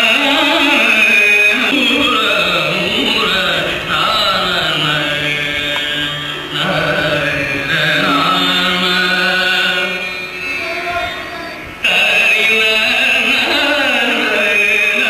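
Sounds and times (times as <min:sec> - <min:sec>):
devotional music: 0:00.0 - 0:15.0
person singing devotional chant: 0:00.0 - 0:15.0.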